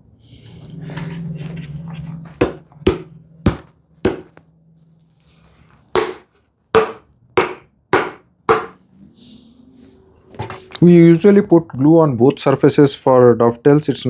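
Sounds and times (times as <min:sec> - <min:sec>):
mallet knocking on wood: 0:02.4 - 0:04.4, 0:06.0 - 0:06.2, 0:06.8 - 0:08.8.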